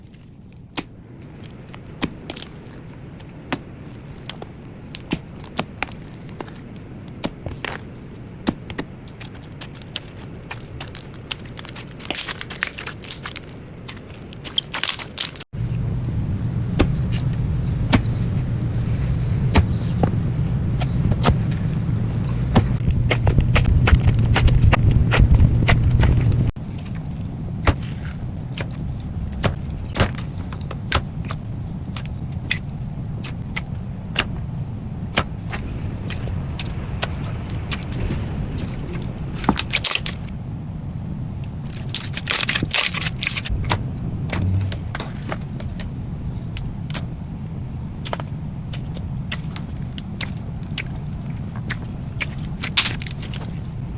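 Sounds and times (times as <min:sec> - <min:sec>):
low rumble of handling: 0:00.0 - 0:53.9
slime crackling and popping: 0:08.6 - 0:15.5, 0:41.7 - 0:43.8, 0:48.8 - 0:53.7.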